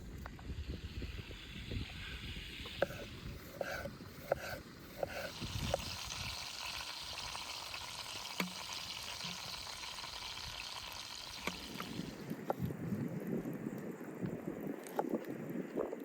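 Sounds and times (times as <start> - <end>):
steak sizzling in a pan: 5.0 - 12.2.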